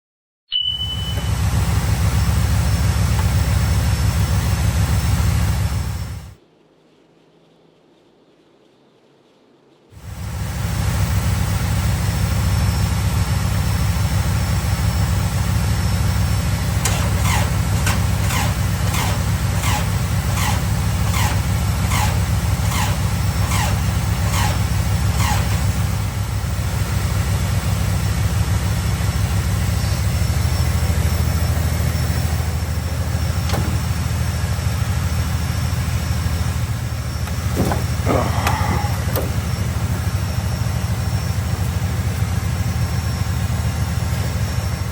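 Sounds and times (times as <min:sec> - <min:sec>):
short falling chirps: 0:00.5 - 0:01.6
vehicle engine idling: 0:00.6 - 0:06.4, 0:10.0 - 0:44.9.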